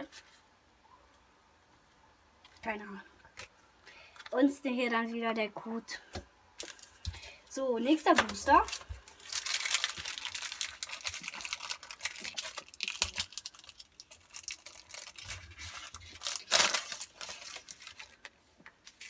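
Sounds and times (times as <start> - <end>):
wrapper tearing and crinkling: 8.2 - 19.0.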